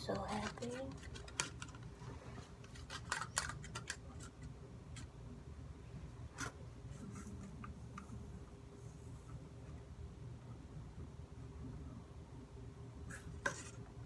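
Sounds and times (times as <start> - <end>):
utensil clicking and scraping: 0.0 - 5.2
steady low hum: 0.0 - 14.0.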